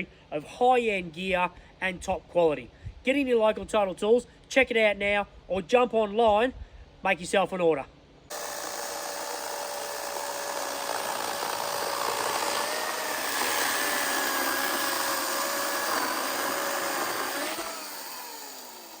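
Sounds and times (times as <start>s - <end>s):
chainsaw running at high speed: 8.3s - 19.0s.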